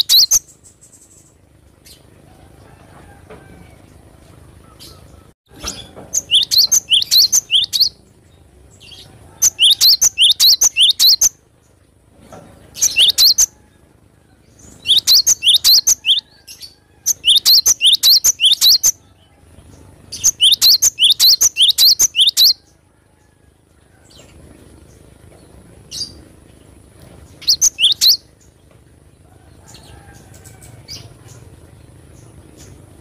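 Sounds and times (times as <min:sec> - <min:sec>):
bird chirping rapidly: 0:00.0 - 0:01.4, 0:05.6 - 0:08.0, 0:08.8 - 0:11.4, 0:12.7 - 0:13.5, 0:14.7 - 0:19.0, 0:20.1 - 0:22.6, 0:27.4 - 0:28.3.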